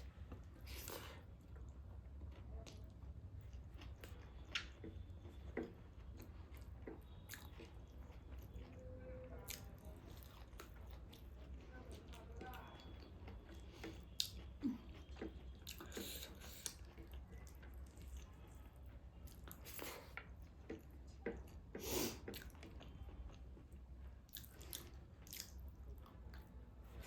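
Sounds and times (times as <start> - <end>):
soft chewing and biting: 0.0 - 27.0.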